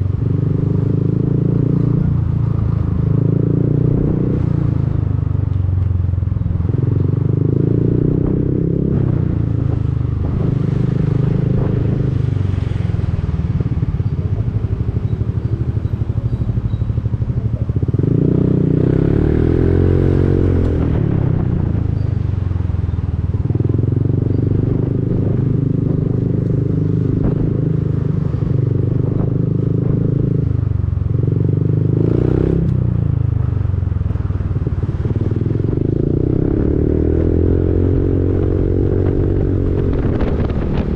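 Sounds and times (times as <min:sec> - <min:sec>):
scooter engine running: 0:09.2 - 0:19.5.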